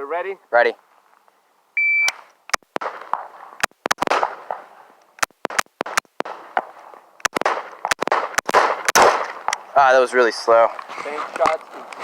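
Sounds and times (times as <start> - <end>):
shot timer beep: 1.8 - 2.2
gunshots: 2.7 - 9.5.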